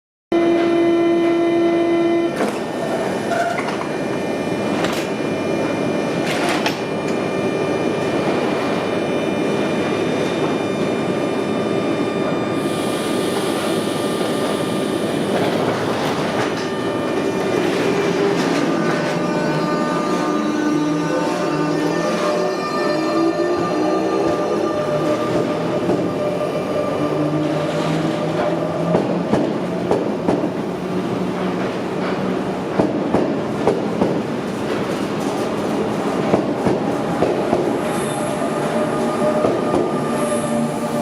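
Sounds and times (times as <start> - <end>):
steady tone: 0.3 - 29.1
train rolling noise: 2.3 - 41.0.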